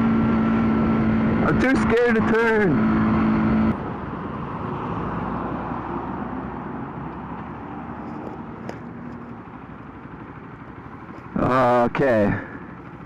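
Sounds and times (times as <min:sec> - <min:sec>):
motorcycle engine running: 0:00.0 - 0:03.8, 0:07.5 - 0:13.0
wind and road noise: 0:00.0 - 0:13.0.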